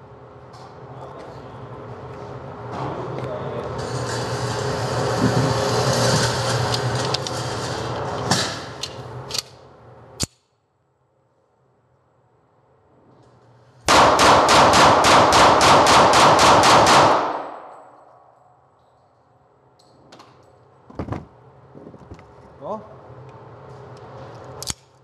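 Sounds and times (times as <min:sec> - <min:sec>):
pistol shots in rapid succession: 0:13.9 - 0:17.8.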